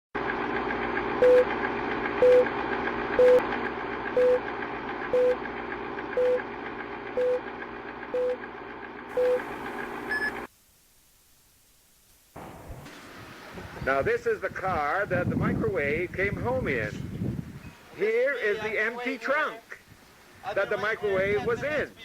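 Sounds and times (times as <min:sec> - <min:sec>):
short electronic beeps: 0:01.2 - 0:01.5, 0:02.2 - 0:02.5, 0:03.2 - 0:03.4, 0:04.2 - 0:04.4, 0:05.1 - 0:05.4, 0:06.2 - 0:06.4, 0:07.2 - 0:07.4, 0:08.2 - 0:08.4, 0:09.1 - 0:09.5, 0:10.1 - 0:10.4
steady hiss and hum: 0:09.4 - 0:21.1.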